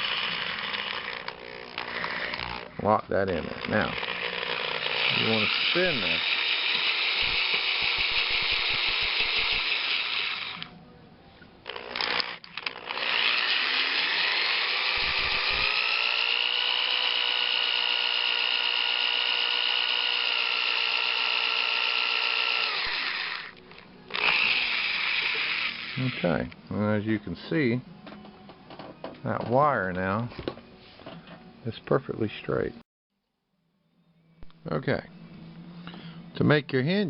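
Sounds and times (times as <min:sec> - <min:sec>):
electric drill whining: 0:00.0 - 0:10.7, 0:11.6 - 0:26.5.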